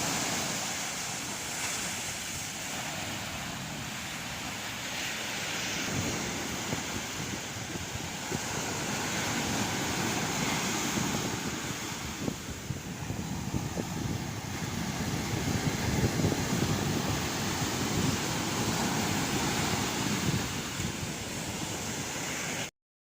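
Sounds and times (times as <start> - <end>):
river water rushing over rocks: 0.0 - 6.4
wind buffeting microphone: 0.0 - 22.6.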